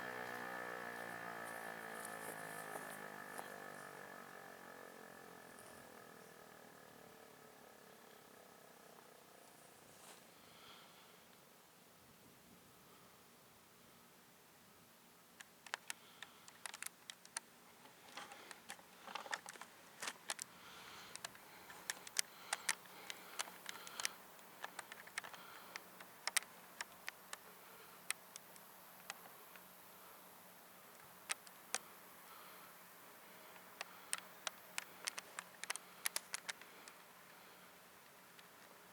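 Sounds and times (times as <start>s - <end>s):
faint sharp clicks: 15.4s - 29.8s, 30.8s - 38.9s.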